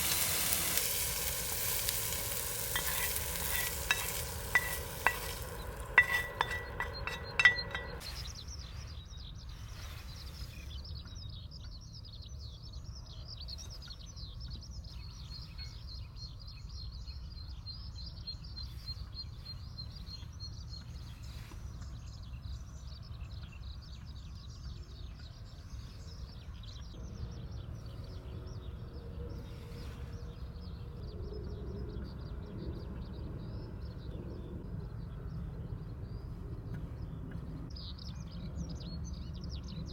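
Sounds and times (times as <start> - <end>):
utensils clinking on cookware: 0.0 - 8.2
low wind rumble: 0.0 - 9.4, 25.3 - 39.9.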